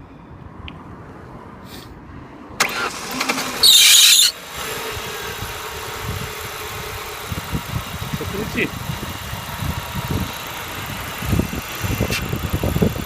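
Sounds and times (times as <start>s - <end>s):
high-pitched engine squeal: 2.6s - 5.4s
car engine cranking and idling: 2.6s - 13.0s.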